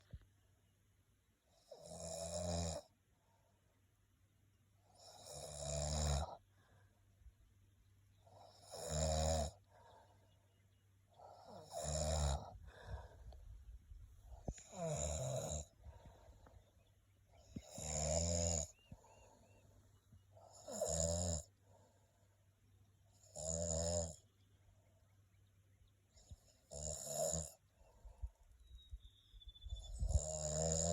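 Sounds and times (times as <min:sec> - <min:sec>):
turkey snoring: 0:11.1 - 0:13.1, 0:14.3 - 0:16.7.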